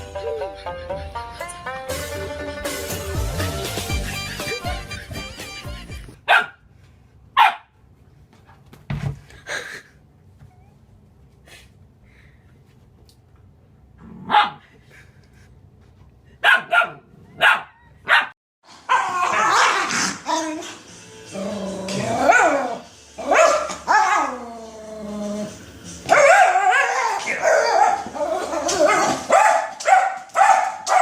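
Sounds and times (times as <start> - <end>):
music: 0.0 - 6.2, 20.3 - 26.3
dog barking: 6.2 - 6.6, 7.4 - 7.8, 14.2 - 14.6, 16.4 - 19.9, 22.3 - 22.6, 23.3 - 24.3, 26.1 - 28.1, 28.9 - 31.0.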